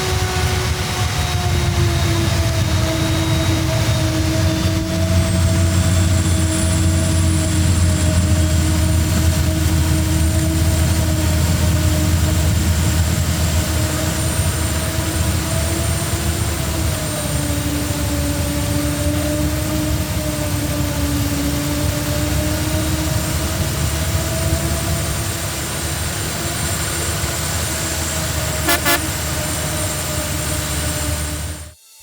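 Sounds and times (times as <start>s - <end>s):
heavy diesel engine rumble: 2.5s - 31.7s
horn toots: 28.6s - 29.7s.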